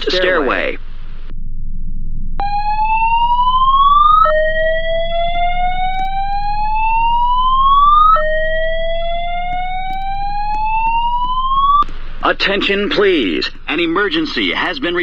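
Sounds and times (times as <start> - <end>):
fire alarm whoop tone: 2.4 - 11.8.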